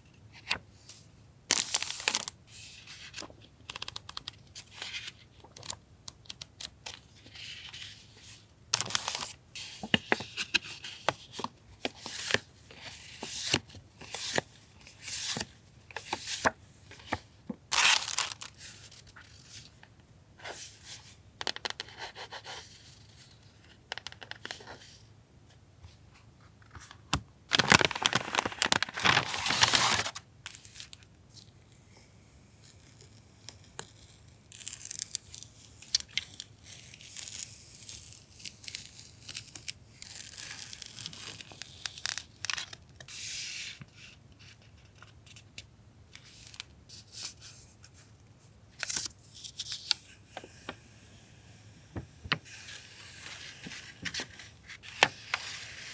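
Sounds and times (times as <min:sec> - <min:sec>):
packaging tearing and crinkling: 0:17.7 - 0:18.5, 0:27.5 - 0:30.2.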